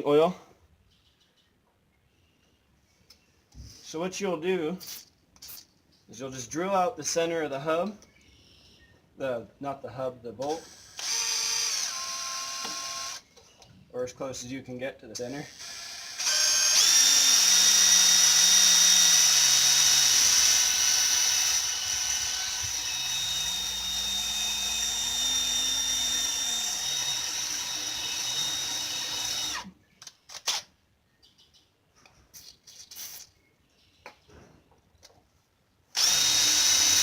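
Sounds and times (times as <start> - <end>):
power drill whining: 10.5 - 13.3, 15.5 - 29.7, 35.9 - 37.0.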